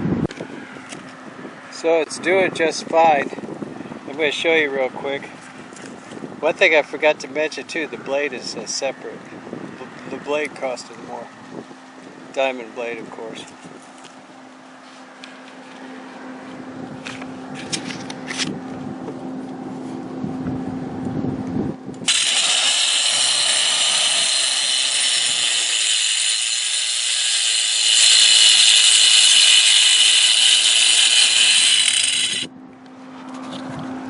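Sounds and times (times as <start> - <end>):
circular saw grinding masonry: 22.0 - 32.5.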